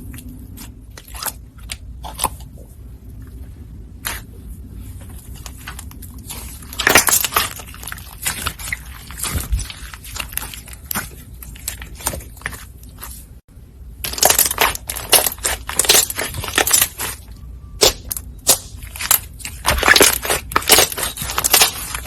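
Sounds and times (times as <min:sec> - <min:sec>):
slime squeezed crackling pops: 0:17.8 - 0:22.0.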